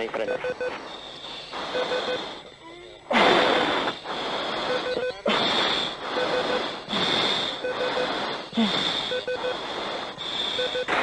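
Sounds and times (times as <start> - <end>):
triple beep: 0.0 - 0.8, 1.7 - 2.3, 4.6 - 5.3, 6.1 - 6.7, 7.6 - 8.2, 9.0 - 9.6, 10.5 - 11.0
steady rushing noise: 0.0 - 11.0.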